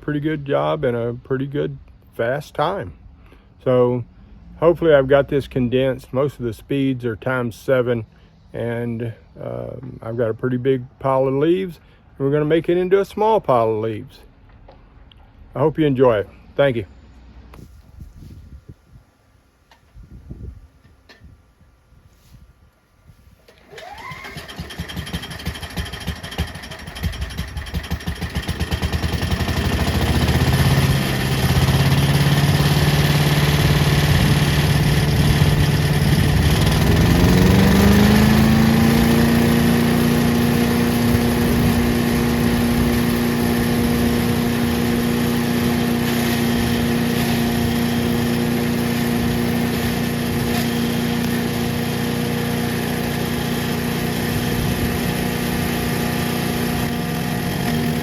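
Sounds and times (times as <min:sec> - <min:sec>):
petrol engine running: 0:23.5 - 0:58.0.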